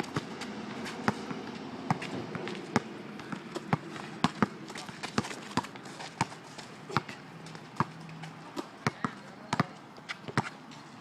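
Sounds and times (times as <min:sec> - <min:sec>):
basketball bouncing on hard court: 0:01.0 - 0:07.2, 0:08.8 - 0:10.5.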